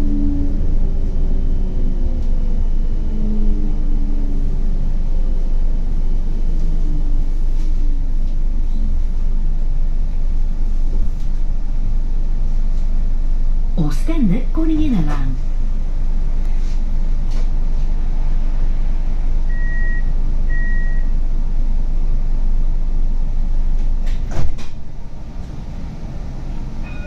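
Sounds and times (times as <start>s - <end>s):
tram rumbling on rails: 0.0s - 27.0s.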